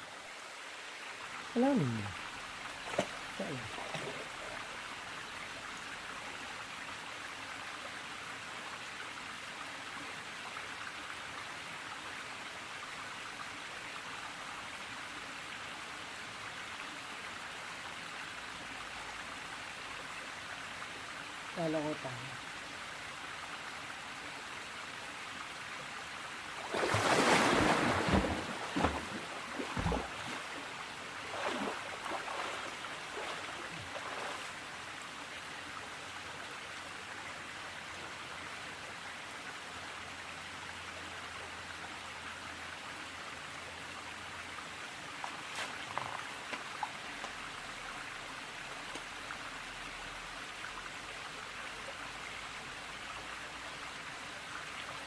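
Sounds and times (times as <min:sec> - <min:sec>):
water splashing: 0:02.6 - 0:04.8, 0:26.6 - 0:34.7
mountain stream rushing: 0:25.6 - 0:38.2.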